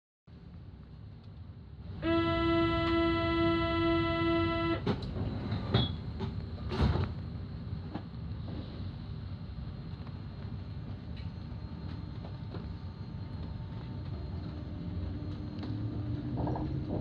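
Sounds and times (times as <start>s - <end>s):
steady horn-like note: 2.0s - 4.8s.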